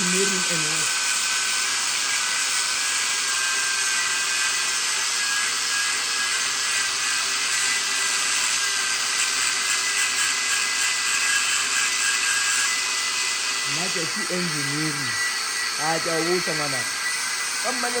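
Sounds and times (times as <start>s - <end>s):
power tool whining: 0.0s - 18.0s.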